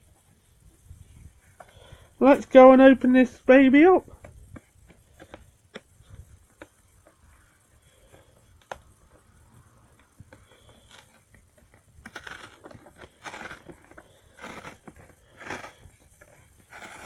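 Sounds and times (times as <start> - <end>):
packaging clicks and scratches: 10.0 - 17.0.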